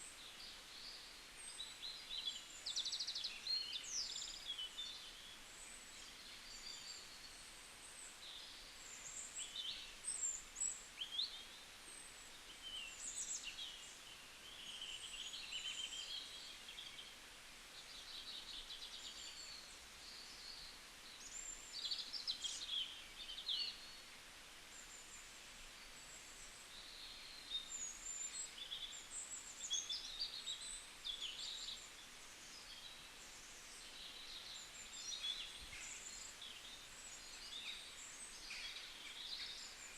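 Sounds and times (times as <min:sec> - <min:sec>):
faint steady hiss: 0:00.0 - 0:39.9
songbirds chirping and singing: 0:26.1 - 0:39.9.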